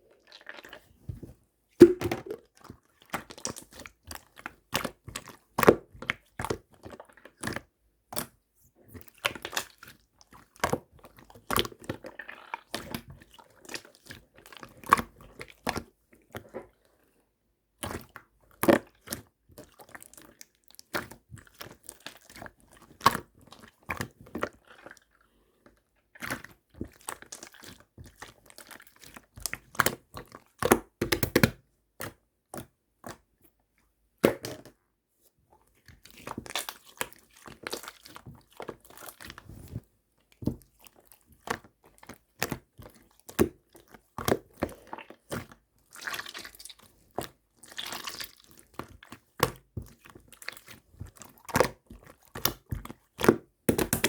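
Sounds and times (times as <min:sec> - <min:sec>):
slime squelching with sticky clicks: 0:01.8 - 0:16.7, 0:17.7 - 0:25.2, 0:26.0 - 0:34.8, 0:35.6 - 0:54.0.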